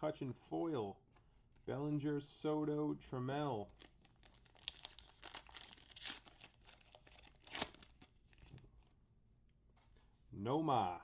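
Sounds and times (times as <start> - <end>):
card pack wrapper tearing: 3.8 - 8.5.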